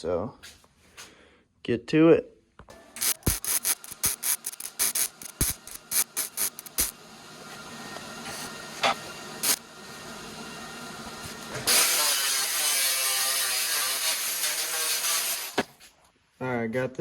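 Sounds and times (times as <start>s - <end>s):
steady hiss: 3.0s - 6.9s.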